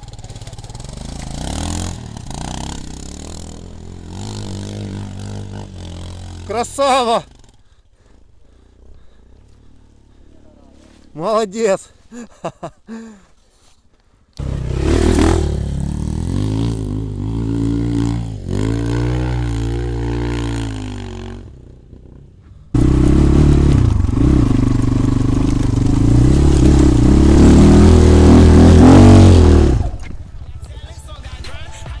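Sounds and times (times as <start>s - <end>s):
off-road vehicle engine revving: 0.0s - 7.7s, 14.4s - 21.6s, 22.7s - 30.2s.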